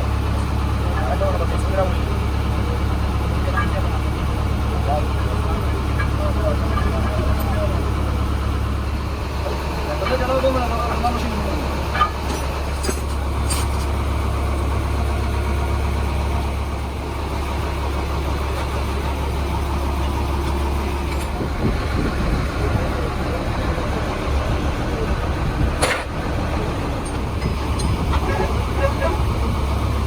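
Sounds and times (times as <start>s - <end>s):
vehicle engine idling: 0.0s - 30.0s.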